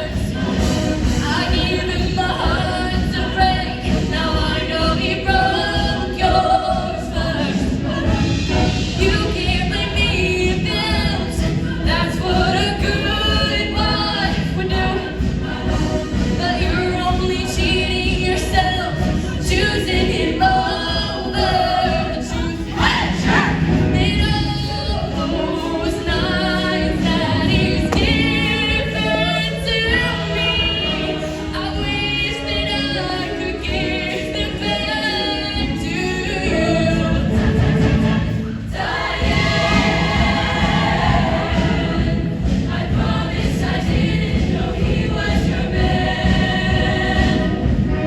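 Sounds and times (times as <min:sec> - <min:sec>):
choir singing in parts: 0:00.0 - 0:48.0
musical accompaniment: 0:00.0 - 0:48.0.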